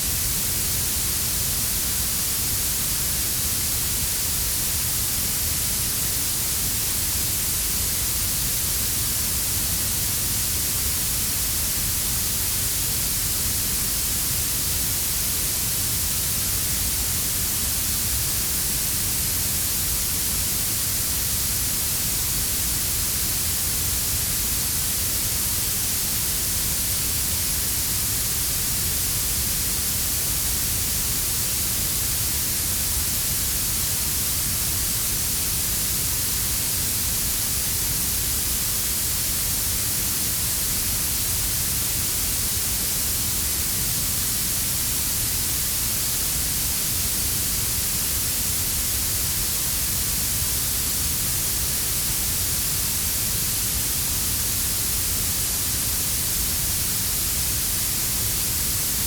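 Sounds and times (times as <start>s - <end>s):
steady high hiss: 0.0s - 59.0s.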